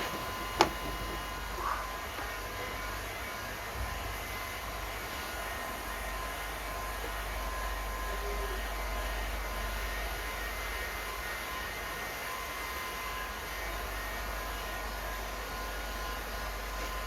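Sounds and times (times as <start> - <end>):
heat gun blowing air: 0.0 - 1.3.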